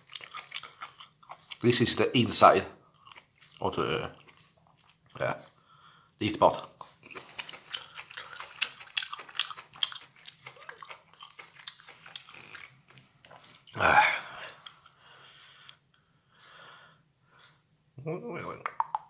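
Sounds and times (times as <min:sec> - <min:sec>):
chewing with wet mouth clicks: 0:00.0 - 0:05.6, 0:06.5 - 0:15.0, 0:18.6 - 0:19.0.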